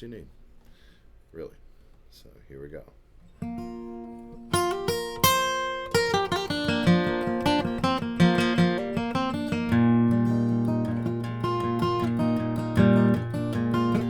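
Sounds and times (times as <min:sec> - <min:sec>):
acoustic guitar picked notes: 0:03.4 - 0:14.0.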